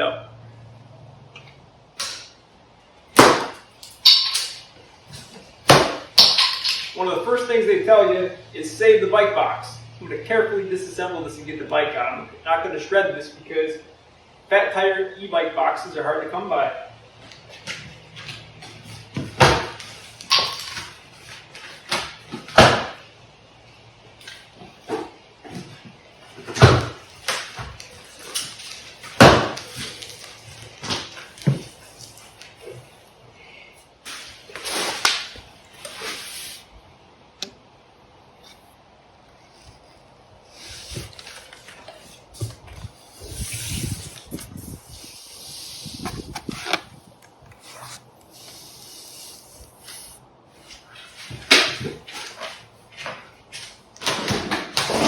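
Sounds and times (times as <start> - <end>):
cardboard rubbing and scraping: 40.6 - 51.4.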